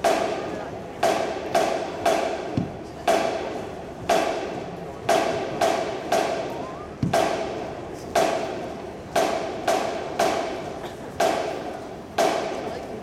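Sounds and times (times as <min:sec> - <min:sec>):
bass drum thump: 0:02.5 - 0:03.3.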